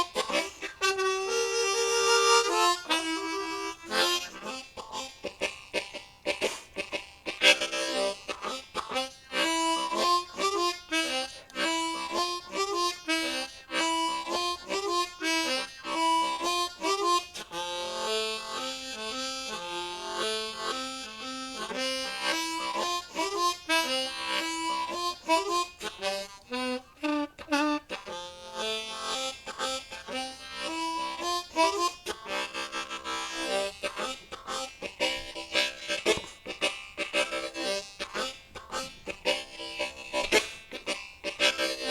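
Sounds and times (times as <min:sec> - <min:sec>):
blues harmonica chord shuffle: 0:00.0 - 0:41.9.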